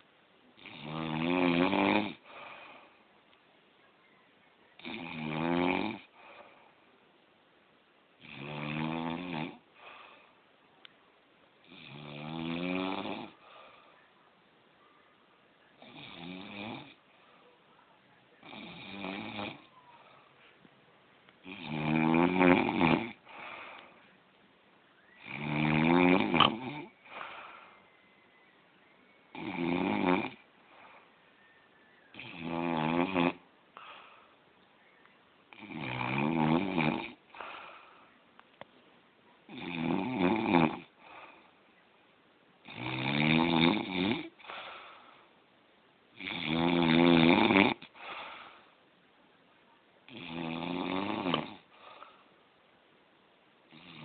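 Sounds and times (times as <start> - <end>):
man snoring: 0.6 - 2.8, 4.8 - 6.2, 8.2 - 9.7, 11.6 - 13.5, 15.8 - 17.0, 18.4 - 19.7, 21.4 - 23.8, 25.2 - 27.6, 29.3 - 30.4, 32.1 - 34.0, 35.5 - 37.8, 39.5 - 41.4, 42.6 - 44.9, 46.2 - 48.4, 50.1 - 52.1, 53.7 - 54.0.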